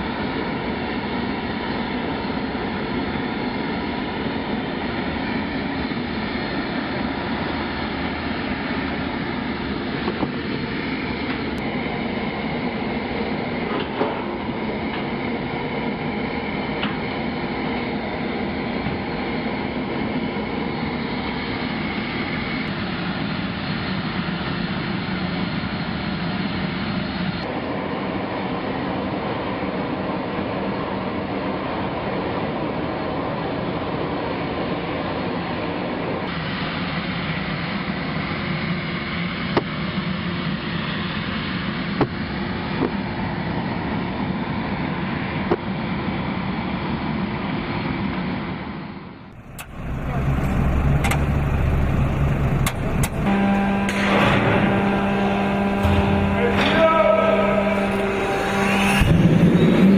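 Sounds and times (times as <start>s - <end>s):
loud machinery noise: 0.0s - 29.7s, 49.3s - 59.9s.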